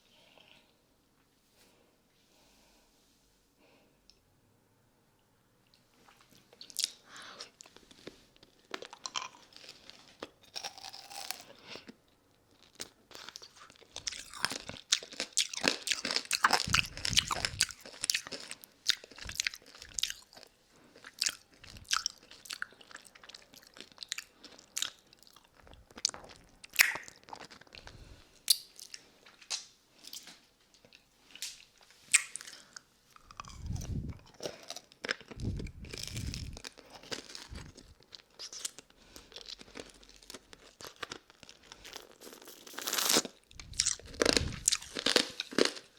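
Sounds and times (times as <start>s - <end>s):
hard candy crunching: 6.6s - 29.0s, 32.1s - 45.9s
wet mouth clicks: 26.7s - 27.2s, 32.1s - 32.6s, 33.2s - 34.2s, 35.3s - 36.5s.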